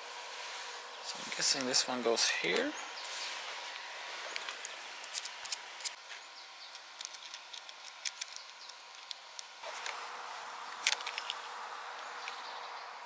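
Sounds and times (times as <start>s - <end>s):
background hiss: 0.0s - 13.0s
bike parts clicking and tapping: 6.7s - 10.0s.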